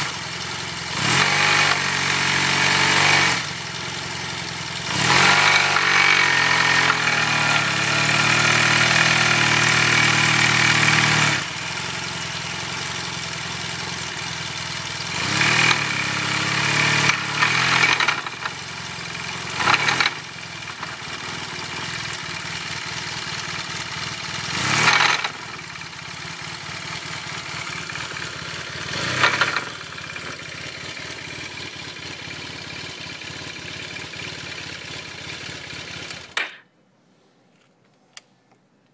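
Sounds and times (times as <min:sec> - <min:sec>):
engine knocking: 0:00.0 - 0:36.4
scooter engine revving and idling: 0:00.0 - 0:36.6.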